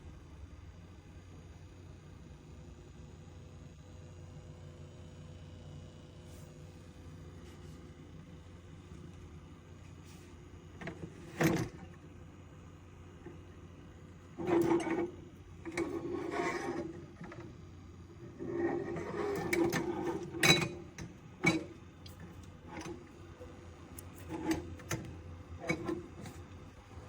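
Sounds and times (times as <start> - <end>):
knocks and rattling scrapes: 14.4 - 17.6.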